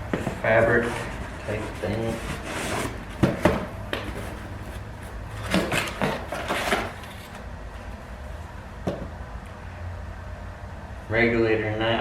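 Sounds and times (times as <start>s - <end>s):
steady low hum: 0.0s - 12.0s
packaging rustling and knocking: 2.3s - 7.4s.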